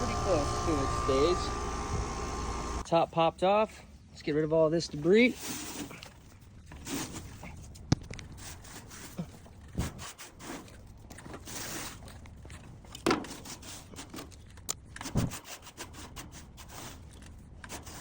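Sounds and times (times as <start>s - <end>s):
debris rustling and scraping: 4.8s - 18.0s.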